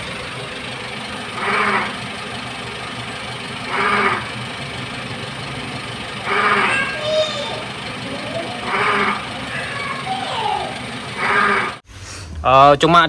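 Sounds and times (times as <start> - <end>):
car engine idling: 0.0 - 12.4
groaning noise from engine: 0.0 - 12.5.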